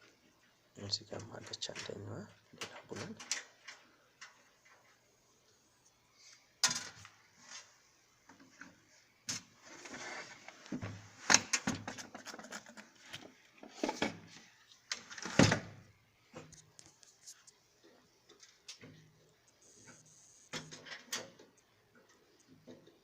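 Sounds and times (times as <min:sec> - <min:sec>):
scraping on computer case: 0:09.6 - 0:13.0.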